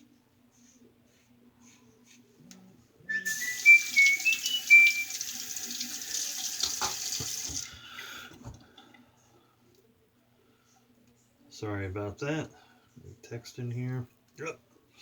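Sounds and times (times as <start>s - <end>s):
tap water running into sink: 3.3s - 8.9s.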